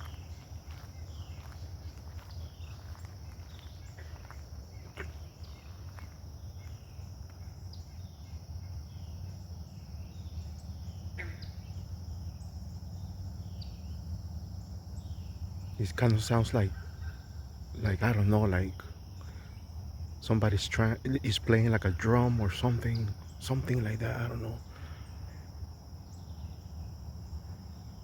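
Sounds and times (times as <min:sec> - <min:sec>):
high insect drone: 0:00.0 - 0:28.0
short curved calls: 0:10.4 - 0:11.9.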